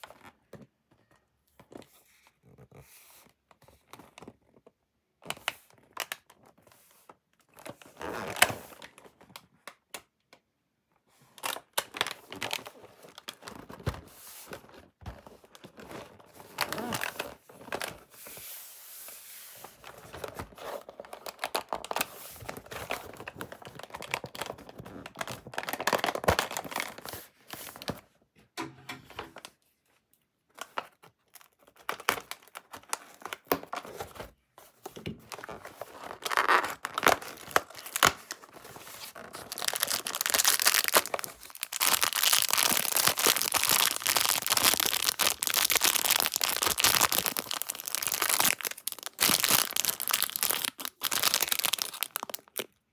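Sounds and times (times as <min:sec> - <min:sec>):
candy wrapper crinkling: 0:36.2 - 0:52.8.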